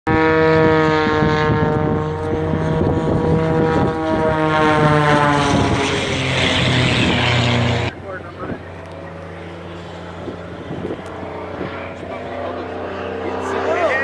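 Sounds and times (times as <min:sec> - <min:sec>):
propeller aeroplane flying past: 0:00.1 - 0:14.0
loud rushing noise: 0:01.0 - 0:08.5.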